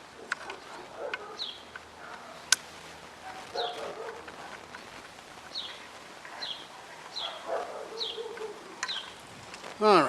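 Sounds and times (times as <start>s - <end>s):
sharp click: 2.5s - 2.7s.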